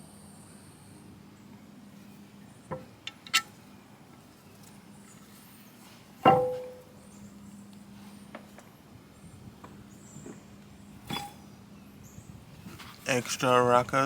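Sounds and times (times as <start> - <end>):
metal parts clicking and clinking: 2.7 - 3.5
loud metallic clank: 6.2 - 7.0, 11.1 - 11.5.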